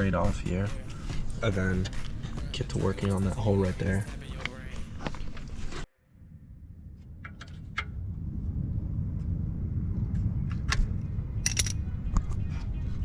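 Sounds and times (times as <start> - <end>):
low steady rumble: 5.4 - 13.0.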